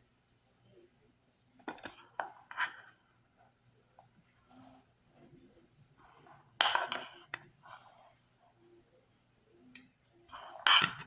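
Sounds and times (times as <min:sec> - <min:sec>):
spoon clinking against dishes: 0:09.6 - 0:11.0.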